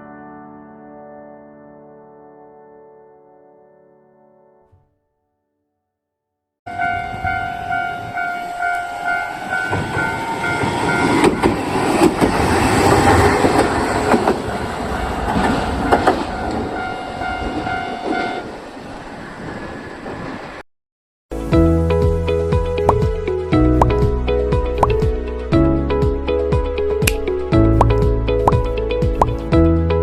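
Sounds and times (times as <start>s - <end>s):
level crossing alarm ringing: 6.7s - 11.4s, 15.8s - 18.5s
train passing: 6.7s - 20.6s.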